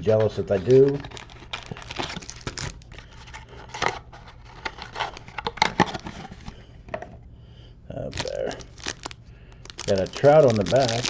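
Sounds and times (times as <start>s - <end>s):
cards being handled: 0.0s - 6.6s, 8.1s - 11.0s
faint low hum: 0.0s - 11.0s
foil wrapper crinkling: 0.1s - 3.4s, 8.0s - 11.0s.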